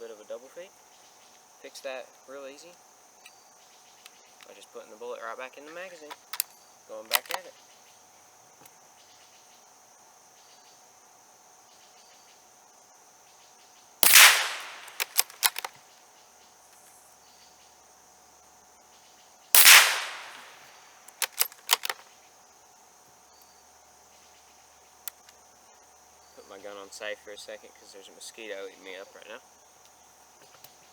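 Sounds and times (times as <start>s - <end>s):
insects droning: 0.0s - 30.9s
rifle bolt clicking: 7.1s - 7.4s, 14.0s - 15.7s, 19.6s - 22.0s
rifle shots: 14.0s - 15.7s, 19.6s - 22.0s.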